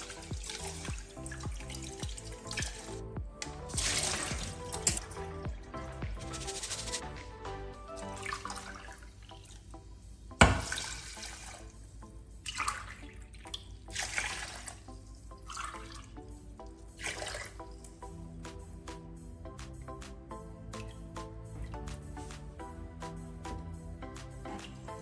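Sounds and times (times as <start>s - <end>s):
tap water running into sink: 0.0s - 3.0s
background music: 0.0s - 25.0s.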